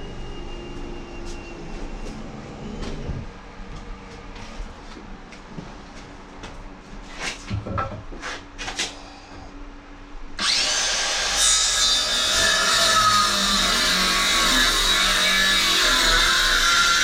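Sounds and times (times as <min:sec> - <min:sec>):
loud steady rasping noise: 0:10.4 - 0:17.0.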